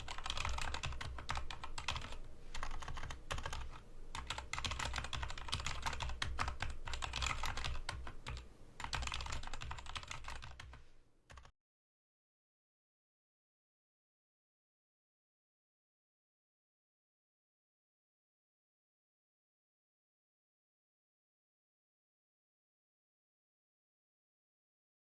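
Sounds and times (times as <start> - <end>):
fast typing on mechanical keyboard: 0.0 - 11.5.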